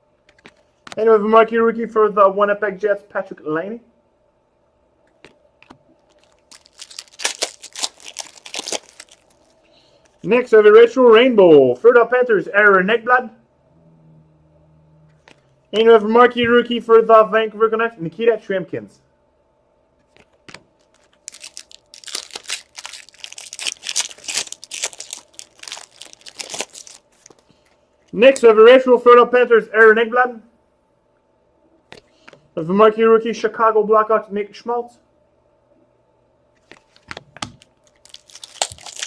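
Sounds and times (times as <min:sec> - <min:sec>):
wrapper crinkling and tearing: 0:06.0 - 0:10.3, 0:20.5 - 0:27.6, 0:36.7 - 0:39.0.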